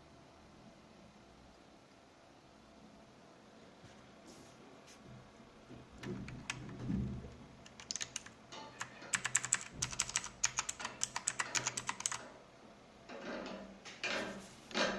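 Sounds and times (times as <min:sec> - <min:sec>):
typing on mechanical keyboard: 0:06.0 - 0:06.9, 0:07.6 - 0:12.2.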